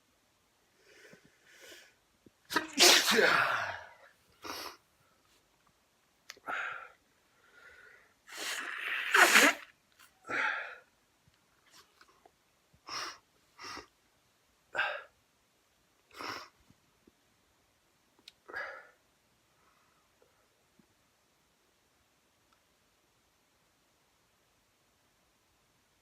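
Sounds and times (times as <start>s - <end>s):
person sneezing: 2.5s - 4.8s, 8.3s - 9.7s.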